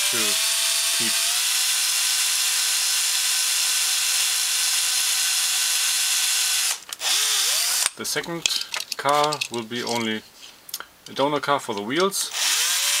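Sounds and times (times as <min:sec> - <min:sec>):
cordless screwdriver motor whine: 0:00.0 - 0:03.1, 0:06.2 - 0:07.9, 0:12.3 - 0:13.0.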